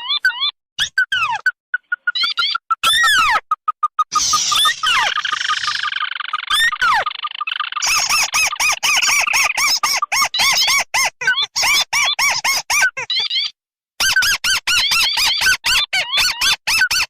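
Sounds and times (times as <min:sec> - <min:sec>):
bird buzzy trill: 0:00.3 - 0:11.1.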